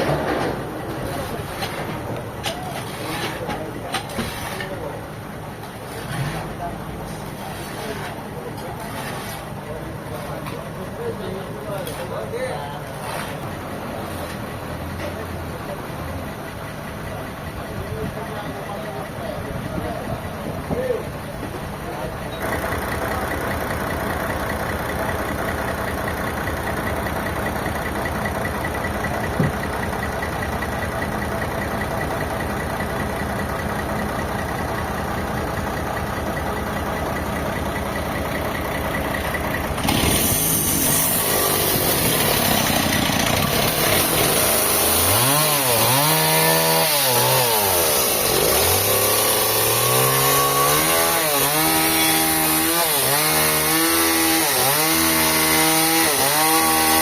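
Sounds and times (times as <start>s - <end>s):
engine running: 0.0s - 57.0s
engine knock: 22.4s - 40.9s
engine revving: 39.7s - 57.0s.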